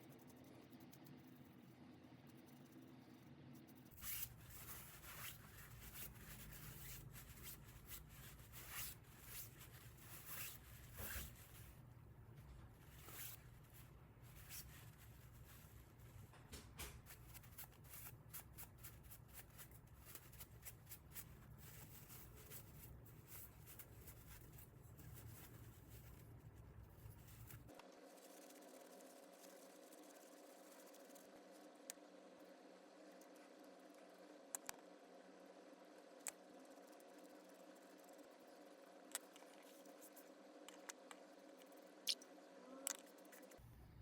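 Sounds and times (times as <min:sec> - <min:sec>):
scratching and ticking of hand work: 0:00.0 - 0:32.1
steady low hum: 0:00.0 - 0:44.0.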